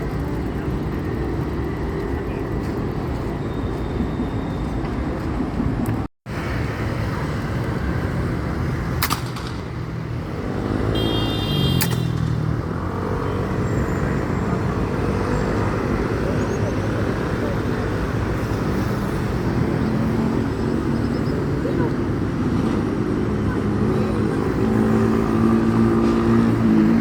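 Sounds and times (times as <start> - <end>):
steady outdoor rumble: 0.0 - 27.0
sharp cracks: 9.0 - 10.0, 11.7 - 12.4.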